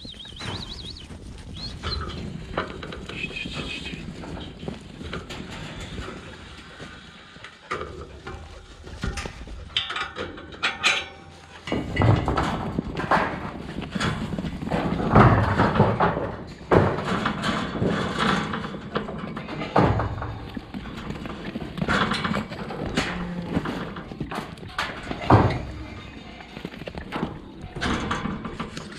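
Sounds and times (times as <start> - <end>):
sheep hooves clattering: 0.0 - 28.9.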